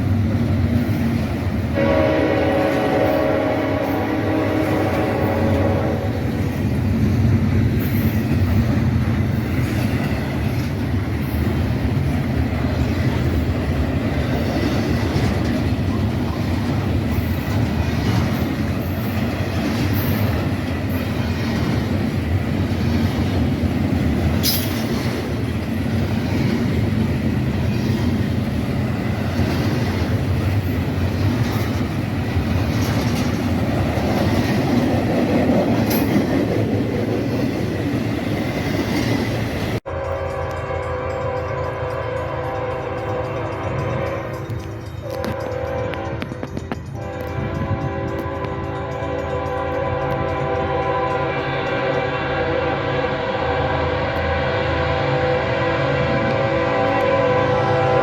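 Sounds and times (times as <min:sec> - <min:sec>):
freight train wheels rumbling: 0:00.0 - 0:58.0
train horn blast: 0:01.7 - 0:06.7, 0:39.8 - 0:58.0.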